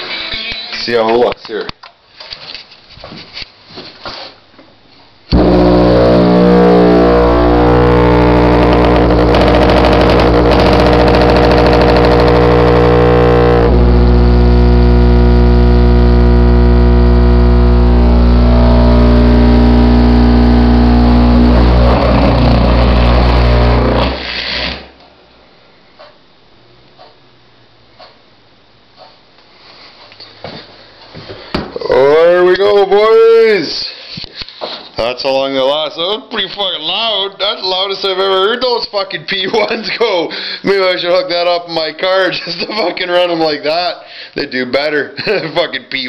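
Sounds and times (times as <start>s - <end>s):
subwoofers buzzing hum: 5.2s - 29.4s.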